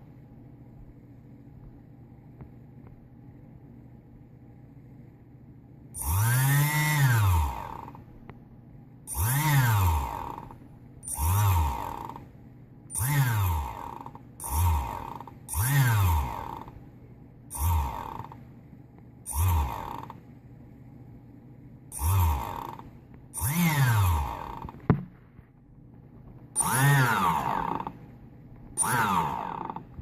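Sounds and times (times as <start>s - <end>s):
electric motor winding up and down: 6.0s - 8.0s, 9.1s - 12.3s, 12.9s - 16.8s, 17.5s - 18.4s, 19.3s - 20.2s, 21.9s - 25.0s, 26.6s - 28.1s, 28.7s - 30.0s
worn bearings clicking: 6.0s - 8.0s, 9.1s - 12.3s, 12.9s - 16.8s, 17.5s - 18.4s, 19.3s - 20.2s, 21.9s - 24.8s, 26.6s - 28.0s, 28.8s - 29.9s.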